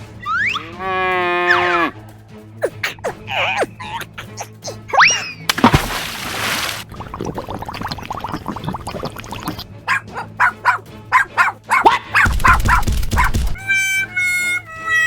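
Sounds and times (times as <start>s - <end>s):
dog barking: 9.9s - 13.6s.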